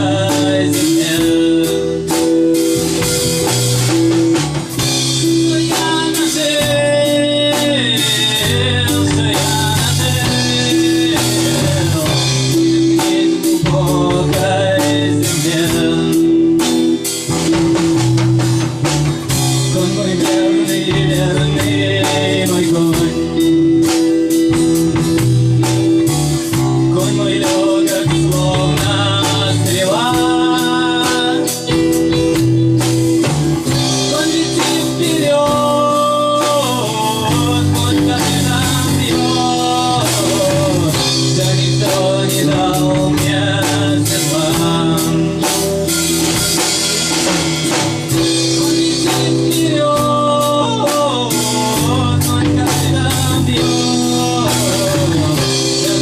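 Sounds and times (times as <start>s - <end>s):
person singing: 0.0s - 3.9s, 4.7s - 17.8s, 19.2s - 56.0s
bass guitar: 0.0s - 56.0s
drum kit beat: 0.0s - 56.0s
guitar: 0.0s - 56.0s.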